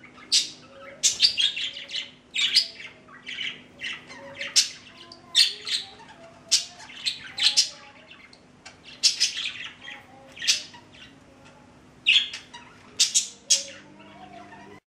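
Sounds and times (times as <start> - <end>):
budgerigars squawking and chirping: 0.0 - 11.3, 12.0 - 14.8
soft budgerigar chatter: 0.0 - 14.8.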